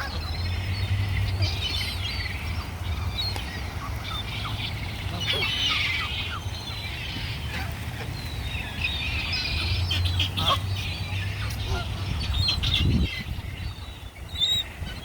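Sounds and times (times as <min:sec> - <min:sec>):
flock of birds calling: 0:00.0 - 0:15.0.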